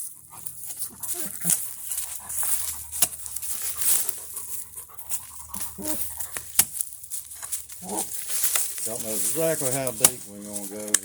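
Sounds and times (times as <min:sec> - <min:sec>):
dog panting and whimpering: 0:00.0 - 0:06.6
dog whining: 0:00.0 - 0:06.6, 0:07.7 - 0:08.4.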